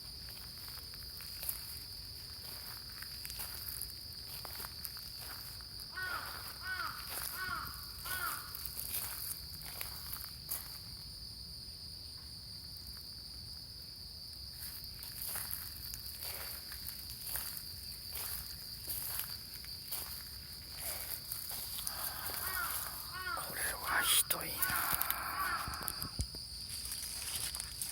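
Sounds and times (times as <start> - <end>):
high insect trill: 0.0 - 27.9
crow cawing: 6.0 - 8.6, 21.8 - 26.2.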